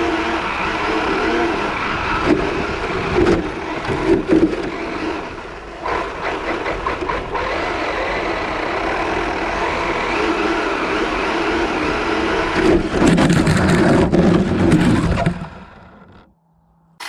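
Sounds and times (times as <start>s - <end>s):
toy car electric motor: 0.0s - 13.4s.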